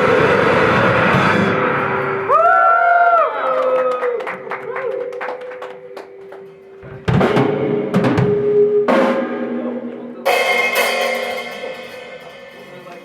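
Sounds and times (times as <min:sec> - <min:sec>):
heavy drum strikes: 0:00.0 - 0:02.5, 0:06.8 - 0:13.0
drum hits: 0:06.8 - 0:13.0
crash cymbal: 0:08.4 - 0:13.0.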